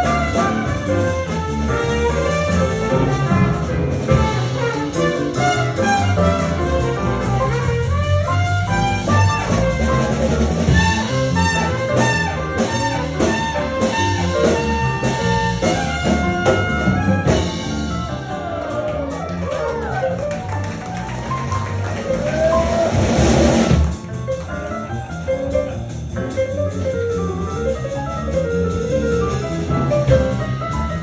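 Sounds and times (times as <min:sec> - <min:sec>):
trumpet and horns melody: 0:00.0 - 0:19.2
drum kit: 0:00.0 - 0:31.0
walking bass line: 0:00.0 - 0:31.0.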